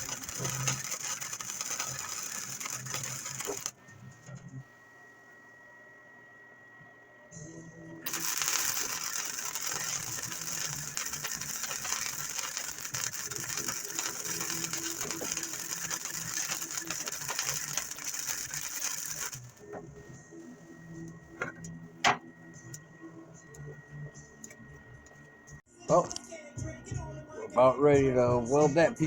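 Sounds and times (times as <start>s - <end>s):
welding arc crackling hiss: 0.0s - 3.8s, 8.1s - 19.7s.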